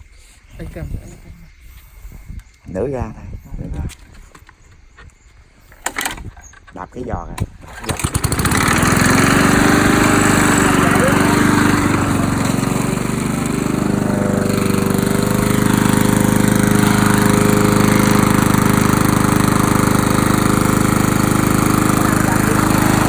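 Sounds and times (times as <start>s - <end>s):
lawn mower engine running: 7.4s - 23.0s.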